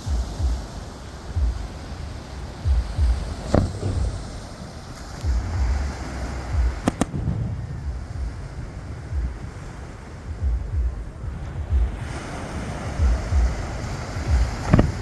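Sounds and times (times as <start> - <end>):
surf: 0.0 - 15.0
wind: 0.0 - 15.0
fireworks booming: 1.4 - 12.2, 13.0 - 15.0
sharp cracks: 3.1 - 5.4, 6.7 - 9.0, 14.5 - 15.0.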